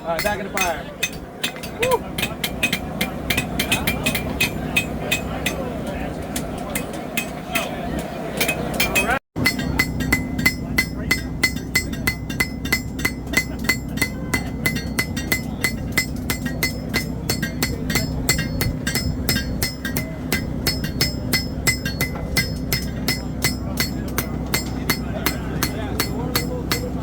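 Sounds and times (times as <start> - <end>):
steady low hum: 0.0 - 27.0
hammer striking blade on anvil: 0.1 - 5.7, 6.4 - 7.8, 8.4 - 27.0.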